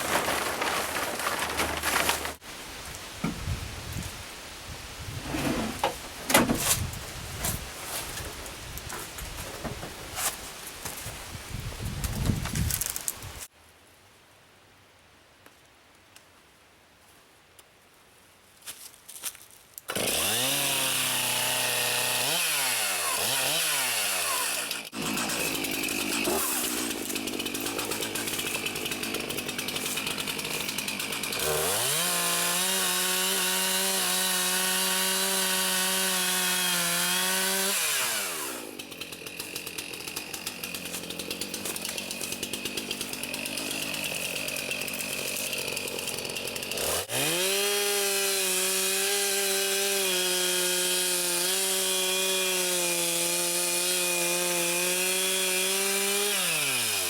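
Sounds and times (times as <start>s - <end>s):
chainsaw cutting logs: 0.0s - 2.4s, 19.9s - 57.0s
chainsaw revving: 19.9s - 57.0s.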